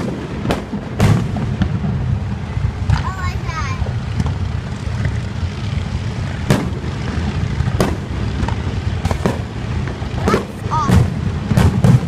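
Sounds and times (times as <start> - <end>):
fireworks booming: 0.0 - 12.0
sharp firework bangs: 0.0 - 12.0.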